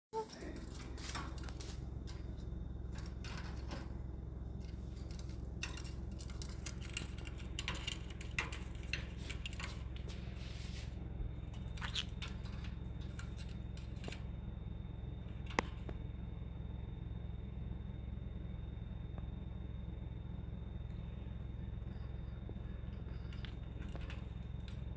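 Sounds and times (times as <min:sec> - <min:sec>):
steady low hum: 0:00.2 - 0:24.9
small sharp clicks and scrapes: 0:04.6 - 0:14.3, 0:22.8 - 0:24.9.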